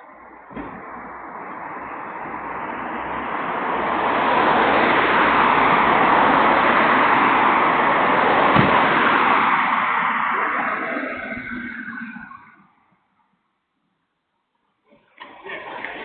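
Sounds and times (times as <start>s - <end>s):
car tyre and road noise: 0.0s - 13.4s
short thud: 0.5s - 0.9s, 8.6s - 8.9s.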